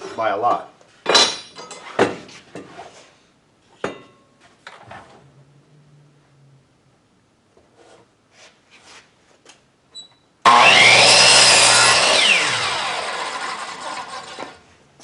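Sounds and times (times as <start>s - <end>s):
chop saw cutting wood: 10.5s - 14.6s
saw blade spinning down: 10.5s - 14.6s.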